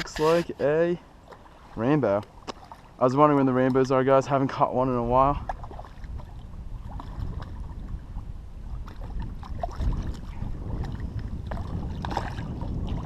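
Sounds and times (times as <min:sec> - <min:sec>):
wind buffeting microphone: 0:03.6 - 0:13.0.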